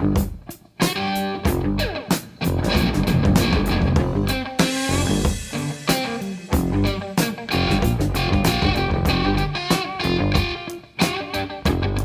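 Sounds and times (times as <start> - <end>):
instrumental rock music: 0.0 - 12.0.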